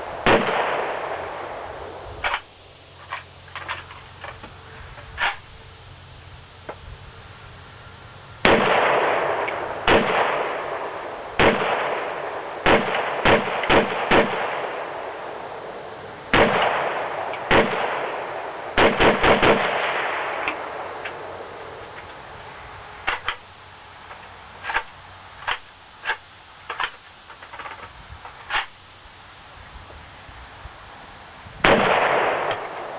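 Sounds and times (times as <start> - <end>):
rifle shots with echo: 0.1 - 2.5, 8.4 - 21.6, 31.6 - 32.9
fainter sharper gunshots: 0.2 - 1.6, 8.4 - 15.1, 16.3 - 20.9, 31.6 - 32.9.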